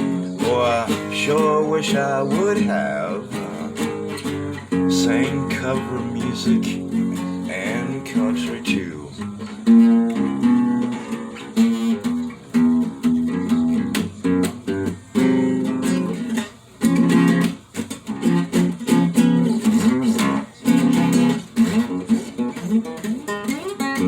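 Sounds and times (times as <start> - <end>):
acoustic guitar strumming: 0.0 - 24.0.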